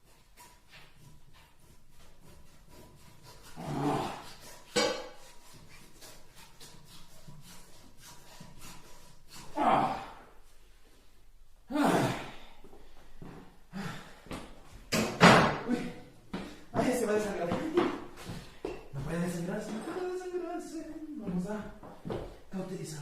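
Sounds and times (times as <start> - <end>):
person gasping: 9.6 - 10.4, 11.7 - 14.4.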